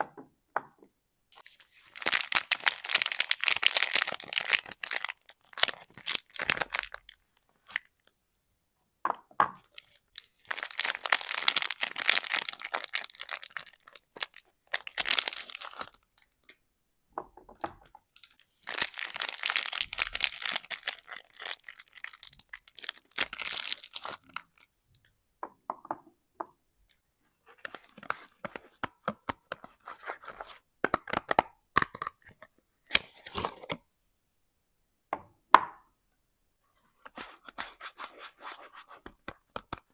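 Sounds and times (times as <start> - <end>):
wrappers tearing and crinkling: 1.4 - 7.2, 10.2 - 16.0, 18.6 - 24.6.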